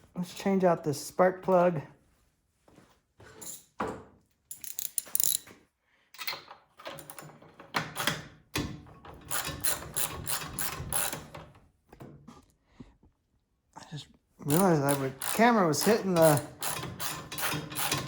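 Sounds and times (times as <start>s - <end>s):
ratchet wrench clicking: 4.5s - 5.4s, 14.5s - 18.0s.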